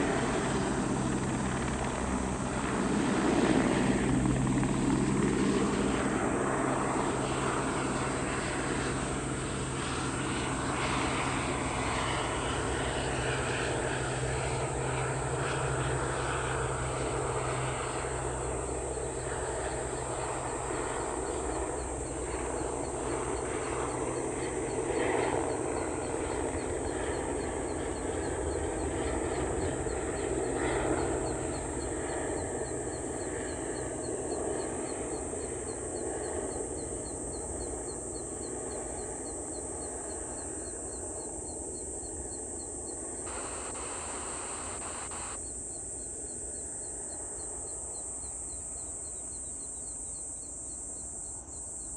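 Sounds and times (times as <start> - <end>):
steady high-pitched hiss: 14.6 - 51.9
birds calling: 43.3 - 45.4.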